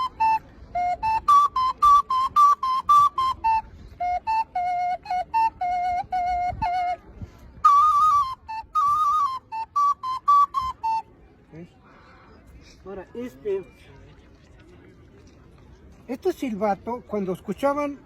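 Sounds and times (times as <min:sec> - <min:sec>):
whistle flute melody: 0:00.0 - 0:11.2.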